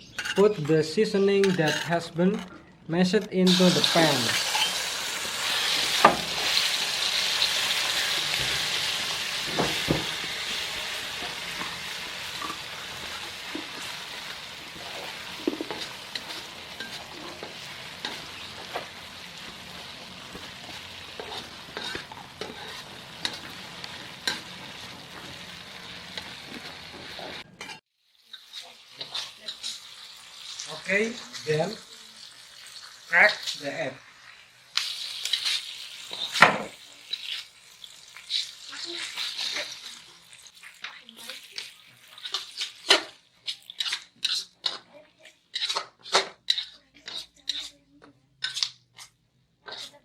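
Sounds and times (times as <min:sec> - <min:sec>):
paste sizzling in oil: 0:03.4 - 0:44.8, 0:48.4 - 0:50.0
utensil scraping a pan: 0:07.4 - 0:29.9, 0:41.5 - 0:47.8, 0:48.4 - 0:50.0.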